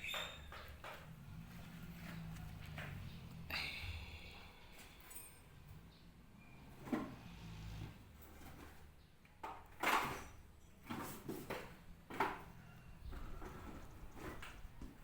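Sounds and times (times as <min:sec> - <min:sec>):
tools clunking and scraping: 0:00.0 - 0:05.9, 0:06.6 - 0:15.0.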